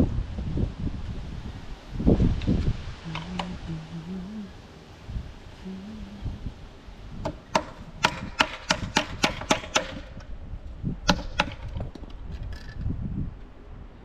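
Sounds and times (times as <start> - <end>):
sharp knocks: 7.2 - 10.2, 11.1 - 12.1.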